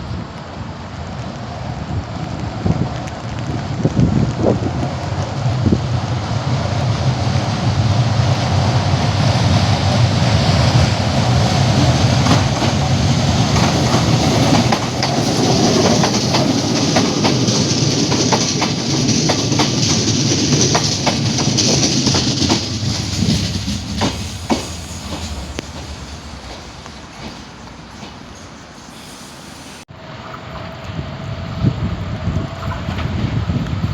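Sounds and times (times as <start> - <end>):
train wheels clicking over rail joints: 6.4 - 30.9.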